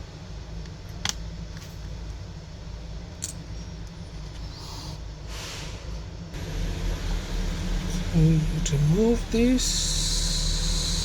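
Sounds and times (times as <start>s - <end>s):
steady low hum: 6.0s - 11.0s.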